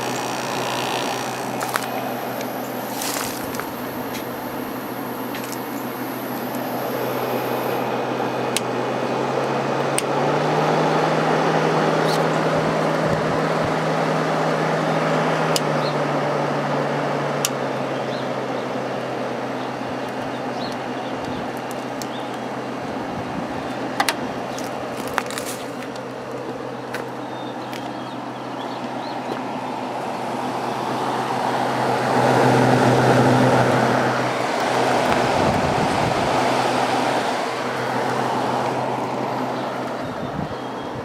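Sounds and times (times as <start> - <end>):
air conditioner fan whoosh: 0.0 - 17.2, 29.5 - 41.0
compressor hum: 0.0 - 41.0.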